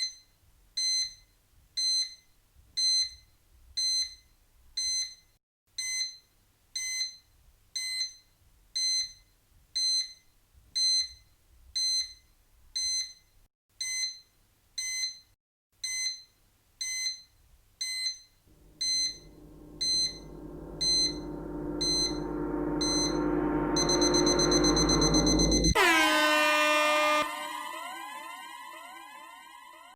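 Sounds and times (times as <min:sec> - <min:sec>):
drone of held tones: 0:18.5 - 0:29.9.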